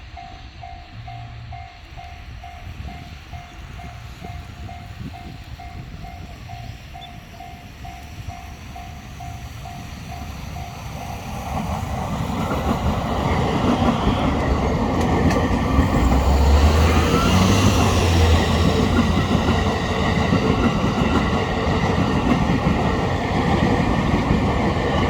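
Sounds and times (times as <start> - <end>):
electric train approaching: 0.0 - 25.0.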